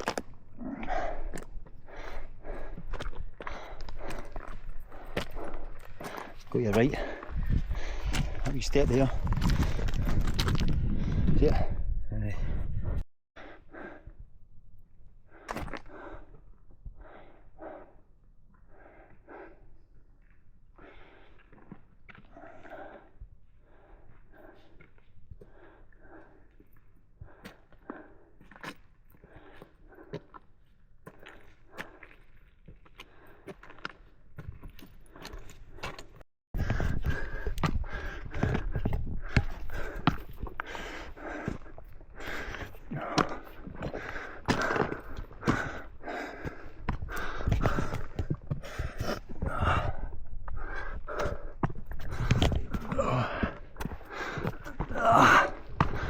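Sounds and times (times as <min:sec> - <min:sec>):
footsteps on rock: 0:00.0 - 0:11.5, 0:27.3 - 0:56.0
person breathing hard: 0:00.6 - 0:10.2, 0:10.8 - 0:14.3, 0:15.2 - 0:19.8, 0:20.7 - 0:30.5, 0:35.0 - 0:56.0.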